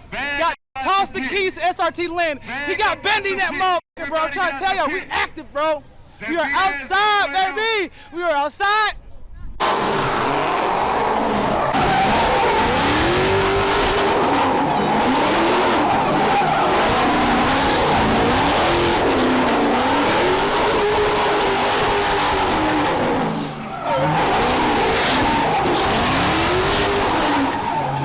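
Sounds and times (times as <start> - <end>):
car engine revving: 9.6 - 28.0
tyres squealing: 11.4 - 28.0.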